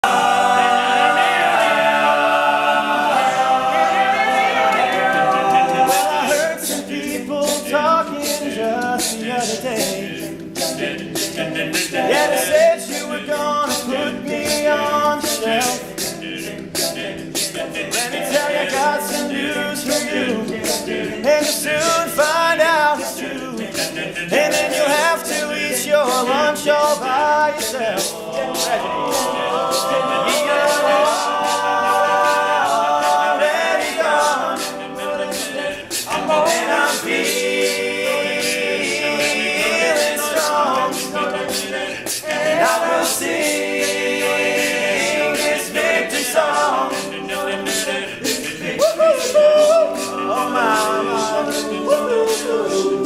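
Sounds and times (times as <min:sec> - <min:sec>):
male group singing chords: 0:00.0 - 0:53.0
vocal percussion beat: 0:00.0 - 0:53.0.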